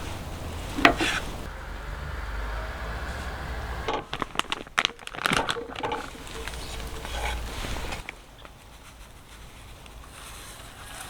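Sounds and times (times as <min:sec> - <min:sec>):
camp gear clack: 0:00.0 - 0:01.5, 0:03.9 - 0:11.0
strong wind rumble: 0:00.0 - 0:08.1.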